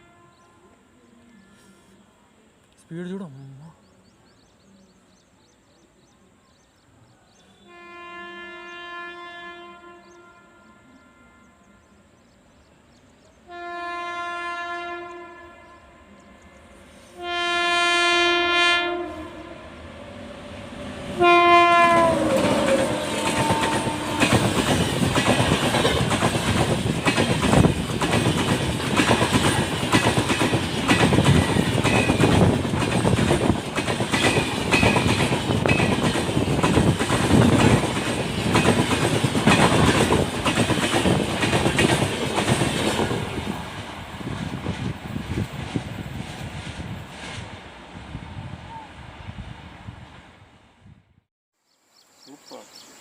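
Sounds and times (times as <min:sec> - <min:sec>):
locomotive horn blasts: 0:00.0 - 0:02.1, 0:07.6 - 0:12.2, 0:13.5 - 0:19.8, 0:21.1 - 0:24.5
train rushing past: 0:15.9 - 0:51.1.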